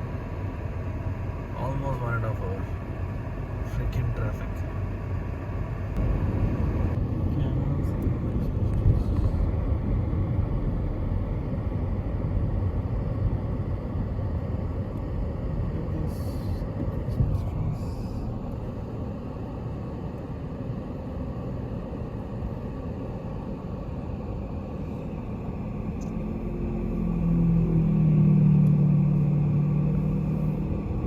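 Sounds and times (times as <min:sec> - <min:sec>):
car cabin road rumble: 0:00.0 - 0:31.0.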